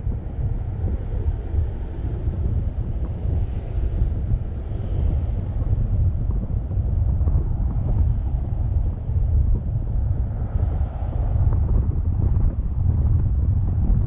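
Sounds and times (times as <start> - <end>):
wind buffeting microphone: 0.0 - 14.0.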